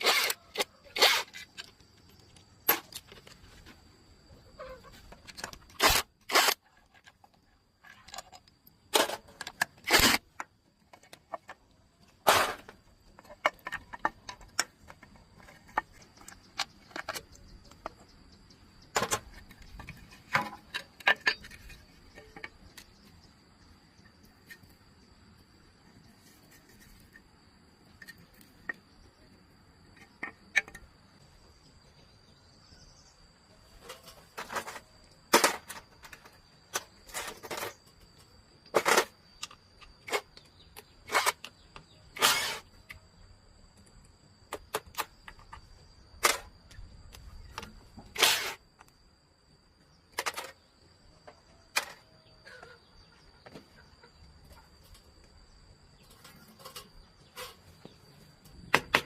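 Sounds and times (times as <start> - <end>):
sharp knocks and clicks: 58.4 - 59.0.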